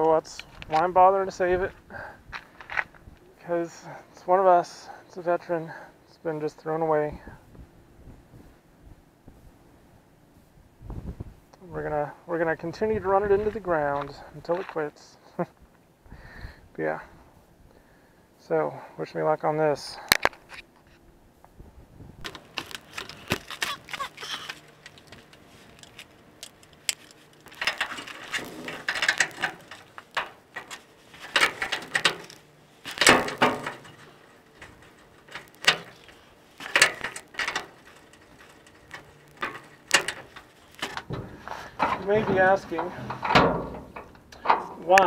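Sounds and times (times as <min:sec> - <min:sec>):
hand tools clanking on metal: 0:23.9 - 0:45.0.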